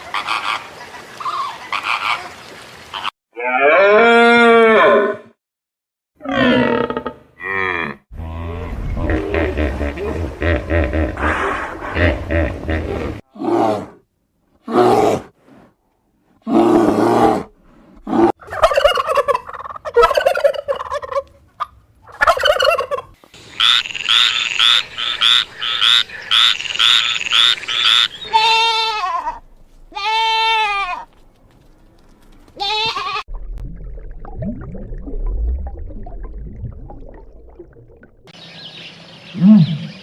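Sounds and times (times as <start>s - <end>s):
drawn-out wavering calls: 22.1s - 29.3s
rapid high calls: 23.4s - 28.6s.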